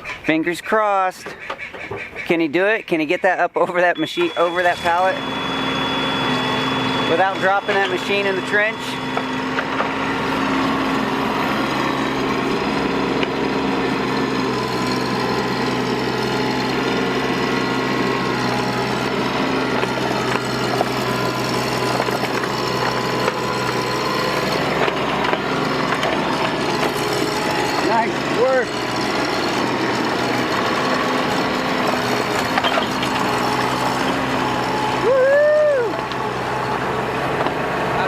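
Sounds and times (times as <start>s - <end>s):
mini excavator engine running: 3.8s - 38.0s.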